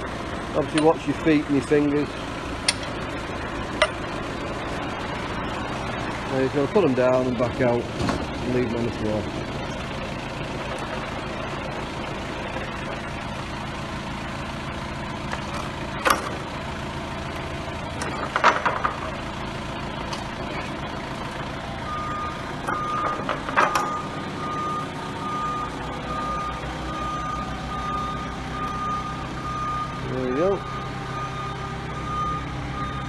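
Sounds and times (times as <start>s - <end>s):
forklift engine running: 0.0s - 33.0s
reversing beeper: 21.6s - 33.0s.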